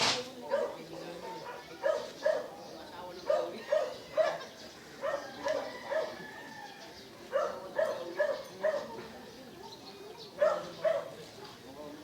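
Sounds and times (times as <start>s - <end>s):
dog barking: 0.5s - 2.6s, 3.3s - 6.2s, 7.3s - 9.0s, 10.4s - 11.2s.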